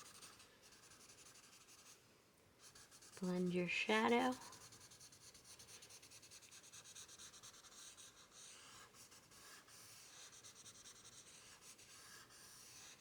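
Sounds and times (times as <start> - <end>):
blending tool rubbing on paper: 2.6 - 13.0.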